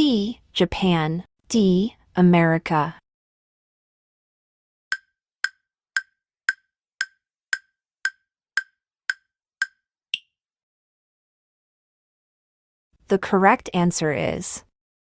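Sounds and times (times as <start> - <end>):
countdown timer ticks: 4.9 - 10.3.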